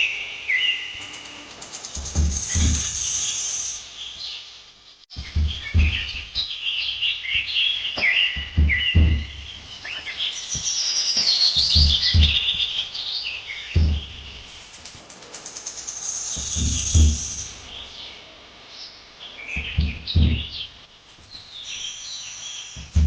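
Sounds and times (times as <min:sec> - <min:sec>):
birds chirping and twittering: 0:00.0 - 0:23.0
low thumps: 0:02.0 - 0:03.2, 0:05.1 - 0:06.5, 0:08.4 - 0:12.9, 0:13.7 - 0:14.7, 0:16.4 - 0:17.9, 0:19.6 - 0:21.4, 0:22.8 - 0:23.0.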